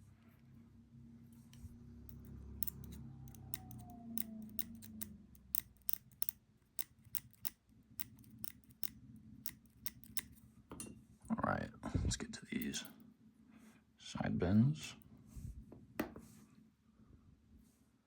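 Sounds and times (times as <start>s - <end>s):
metal lock parts clicking: 1.6s - 10.4s.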